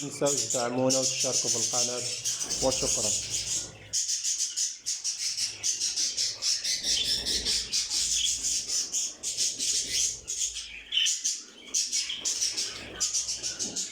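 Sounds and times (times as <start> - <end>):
small birds chirping and twittering: 0.0 - 13.9.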